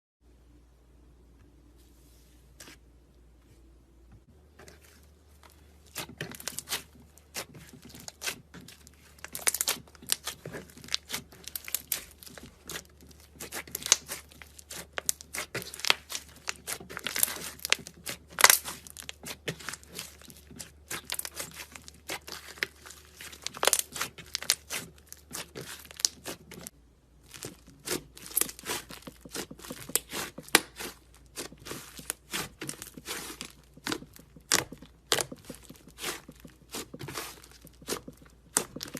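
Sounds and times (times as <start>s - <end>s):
slime squelching by hand: 4.5s - 38.9s.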